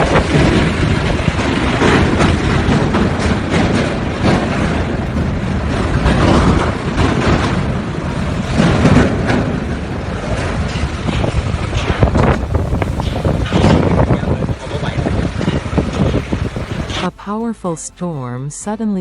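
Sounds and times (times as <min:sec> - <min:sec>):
storm wind buffeting microphone: 0:00.0 - 0:17.1.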